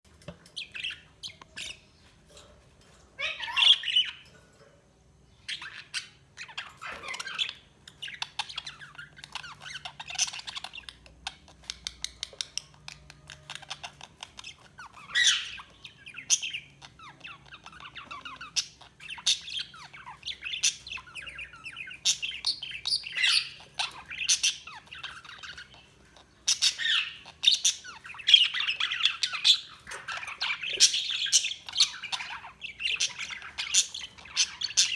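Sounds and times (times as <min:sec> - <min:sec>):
budgies chirping and squawking: 0:00.4 - 0:04.7, 0:05.3 - 0:34.9.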